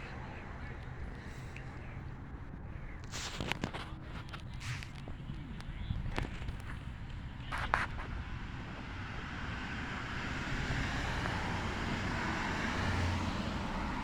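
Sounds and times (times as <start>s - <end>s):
passing motor vehicle: 6.1s - 14.0s.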